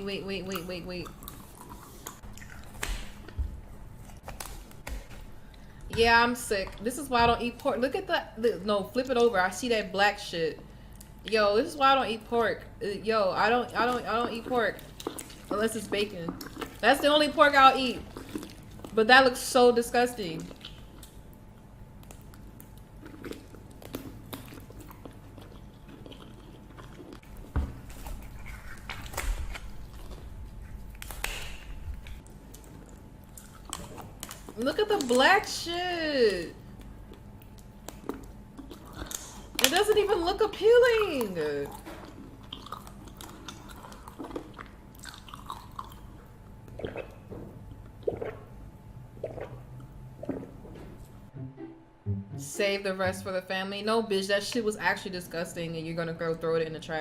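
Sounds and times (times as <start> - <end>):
close chewing and mouth sounds: 0.0 - 5.9, 10.5 - 11.6, 13.5 - 19.2, 19.9 - 35.9, 36.6 - 48.4
low steady hum: 0.0 - 57.0.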